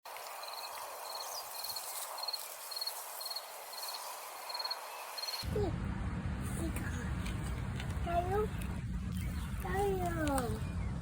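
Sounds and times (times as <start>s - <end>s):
cricket chirping: 0.2s - 5.4s.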